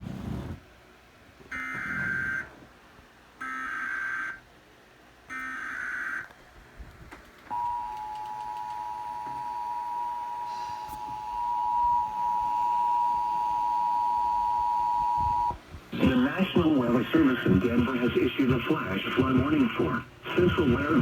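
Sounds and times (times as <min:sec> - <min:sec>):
two-tone attention signal: 0:07.5 - 0:15.6.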